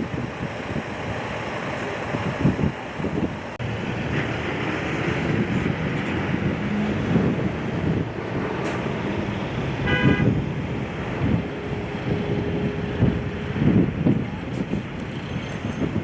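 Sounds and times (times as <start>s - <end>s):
road traffic: 0.0s - 16.0s
wind buffeting microphone: 0.0s - 16.0s
car horn toot: 9.8s - 10.4s.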